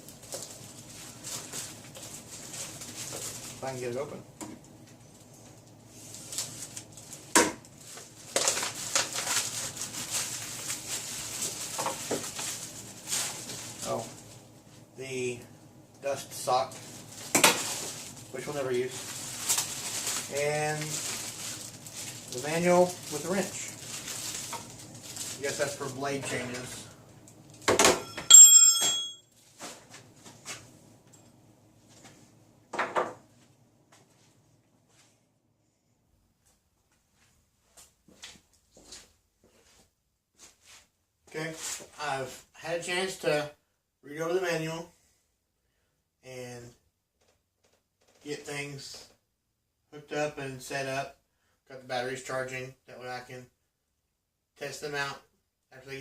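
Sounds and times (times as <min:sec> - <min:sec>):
plastic crinkling: 0:00.0 - 0:03.8, 0:05.1 - 0:14.5, 0:16.6 - 0:26.7
plastic packaging tearing: 0:06.1 - 0:14.0, 0:16.9 - 0:26.7
metal wrench clinking: 0:28.0 - 0:29.2.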